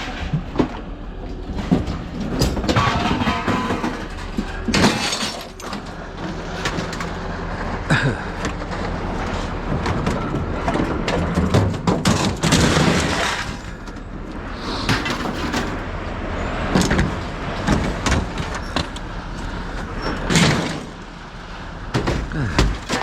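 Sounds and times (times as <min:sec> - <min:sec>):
irregular clanks and crashes: 0:00.0 - 0:15.9, 0:16.7 - 0:23.0
low engine rumble: 0:00.0 - 0:23.0.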